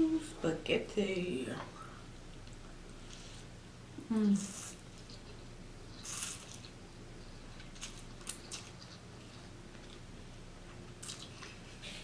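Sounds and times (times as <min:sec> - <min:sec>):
faint steady hum: 0:00.0 - 0:12.0
person chewing noodles: 0:04.4 - 0:10.1, 0:10.7 - 0:12.0.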